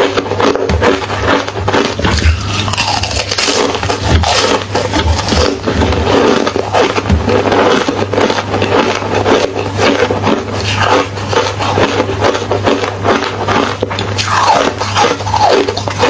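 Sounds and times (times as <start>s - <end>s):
chewing crunching ice: 0.0s - 16.0s.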